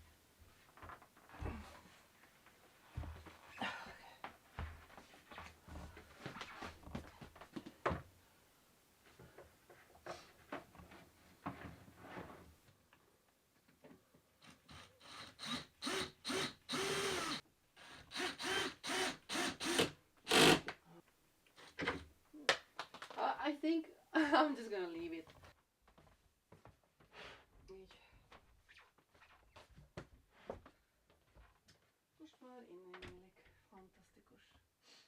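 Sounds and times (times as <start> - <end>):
power driver running: 15.8 - 17.4.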